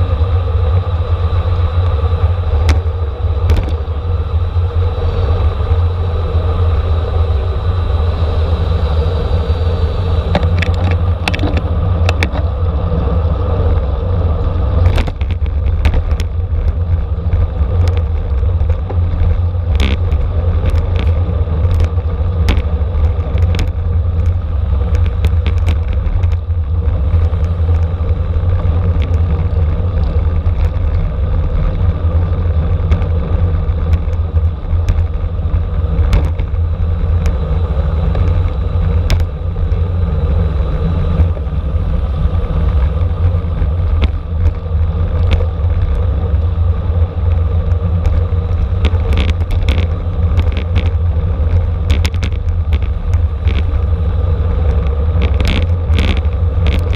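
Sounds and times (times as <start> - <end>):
bicycle road noise: 0.0 - 56.9
wind rumble: 0.0 - 56.9
sharp clicks and knocks: 2.6 - 3.8, 10.3 - 12.5, 14.8 - 31.9, 32.8 - 37.4, 38.0 - 39.8, 42.7 - 46.5, 47.2 - 53.9, 54.6 - 56.9.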